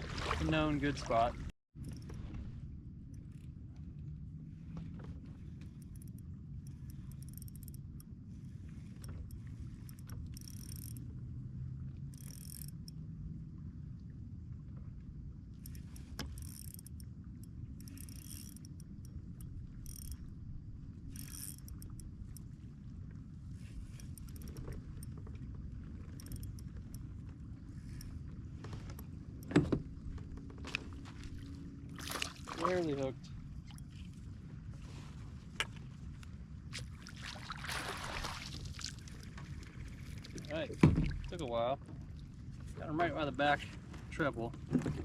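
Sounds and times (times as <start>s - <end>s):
steady low rumble: 0.7s - 44.4s
fishing reel clicking: 6.8s - 7.8s, 9.9s - 11.0s, 12.2s - 13.0s, 16.4s - 17.0s, 17.8s - 20.2s, 21.2s - 22.0s, 26.2s - 26.7s.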